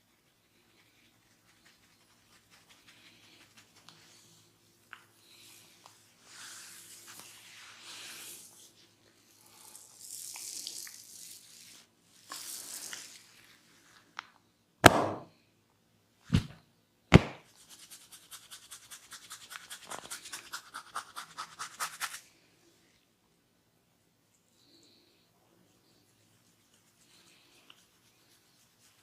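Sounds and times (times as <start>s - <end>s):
hands rustling hair: 0.1s - 8.7s
loud sharp smack: 14.8s - 15.3s, 16.3s - 17.5s.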